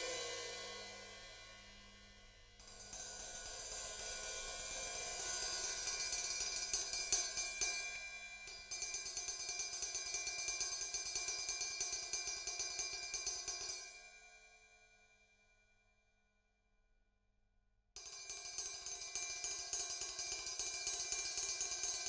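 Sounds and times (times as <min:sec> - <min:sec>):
ride cymbal strokes: 0:00.0 - 0:07.6.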